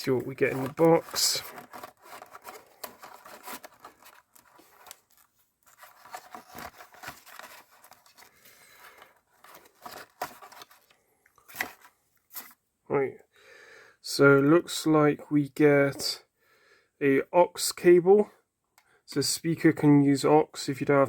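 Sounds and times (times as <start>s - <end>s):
packaging rustling: 0.0s - 12.6s
cardboard and plastic clicks: 0.5s - 8.3s.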